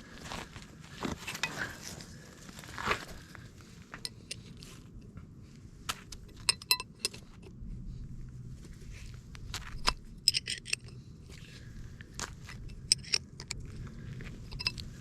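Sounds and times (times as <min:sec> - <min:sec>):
metal tools clinking: 0:06.3 - 0:07.4, 0:09.8 - 0:11.5, 0:12.6 - 0:13.6, 0:14.4 - 0:15.0
low rumble: 0:07.2 - 0:15.0.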